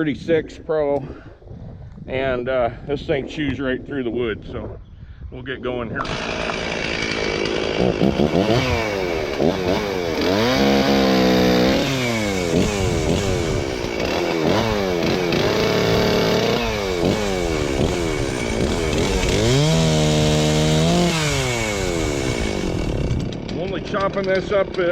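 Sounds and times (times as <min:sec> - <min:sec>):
chainsaw engine revving: 0:06.0 - 0:24.9.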